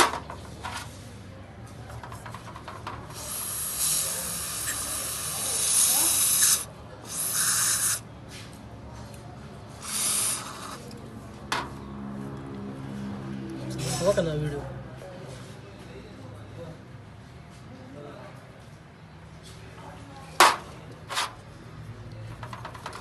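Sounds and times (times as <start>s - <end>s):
pressurised spray hissing: 3.1s - 8.0s, 9.8s - 10.9s.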